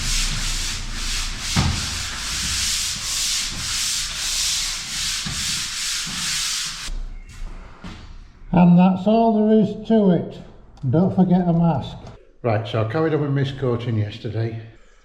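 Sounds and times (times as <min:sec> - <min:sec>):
sander rasping on plaster wall: 0:00.0 - 0:06.9.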